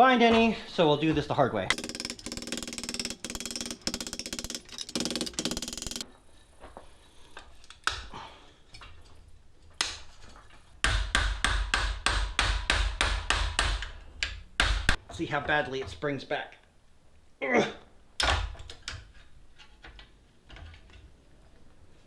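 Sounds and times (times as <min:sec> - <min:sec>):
rapid buzzing rattle: 0:01.7 - 0:06.0.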